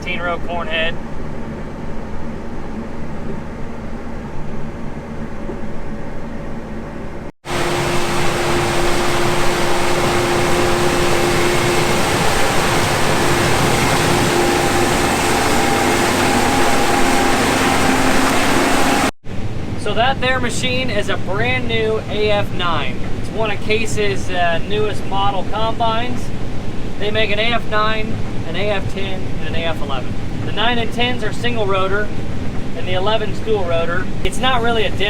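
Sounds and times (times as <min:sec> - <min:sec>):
combine harvester engine hum: 0:01.0 - 0:19.1
whining tones: 0:01.4 - 0:19.2.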